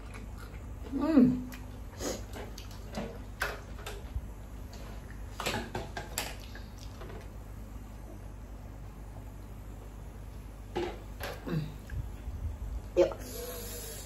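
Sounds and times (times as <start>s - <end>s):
soft crunching while eating: 0.0s - 5.4s, 6.0s - 10.5s.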